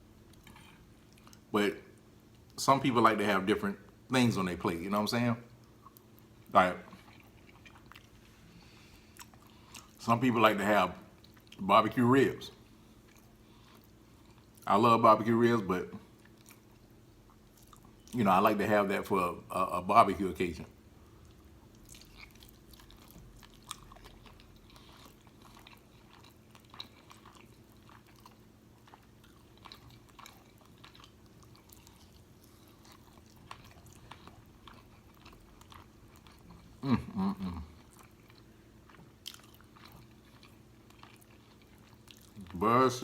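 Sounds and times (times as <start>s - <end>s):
person chewing food: 0.2s - 2.6s, 5.5s - 10.0s, 11.1s - 11.6s, 12.5s - 14.6s, 16.0s - 18.2s, 21.0s - 42.6s
short vocal sound: 36.8s - 37.8s.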